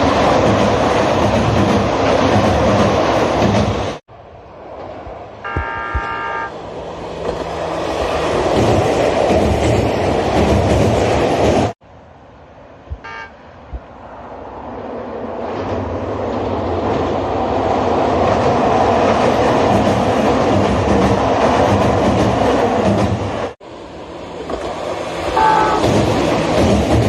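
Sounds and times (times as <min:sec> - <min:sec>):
train running: 0:00.0 - 0:27.0
short train horn toot: 0:05.5 - 0:06.5, 0:13.0 - 0:13.4, 0:25.4 - 0:25.9.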